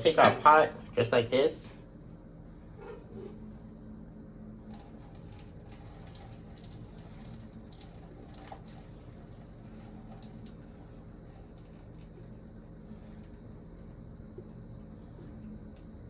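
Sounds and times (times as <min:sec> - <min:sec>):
water poured into sink: 0:04.8 - 0:10.7.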